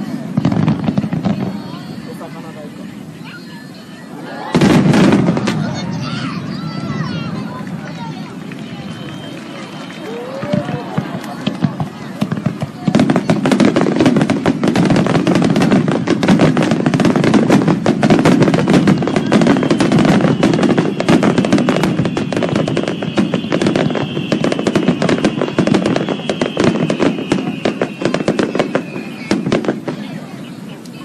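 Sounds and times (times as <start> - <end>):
fireworks crackling: 0.0 - 31.0
faint falling whistle: 18.4 - 29.7.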